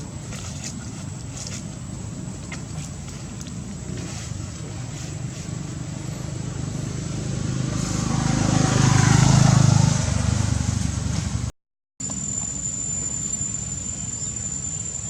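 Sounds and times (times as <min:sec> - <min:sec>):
vehicle engine passing by: 0:03.4 - 0:11.5.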